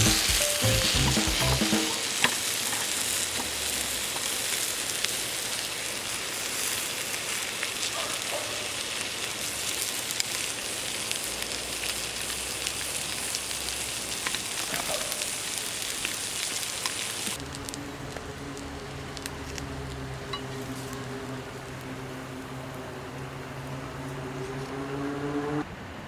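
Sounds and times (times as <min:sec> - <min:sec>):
sizzling hiss with crackles: 0:00.0 - 0:25.6
low steady hum: 0:17.4 - 0:25.6.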